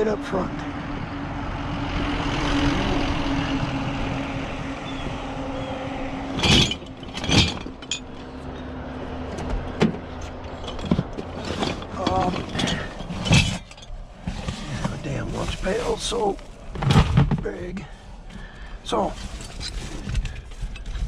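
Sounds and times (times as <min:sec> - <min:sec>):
vehicle engine and tyre noise: 0:00.0 - 0:21.0
scrap metal clanking: 0:06.2 - 0:21.0.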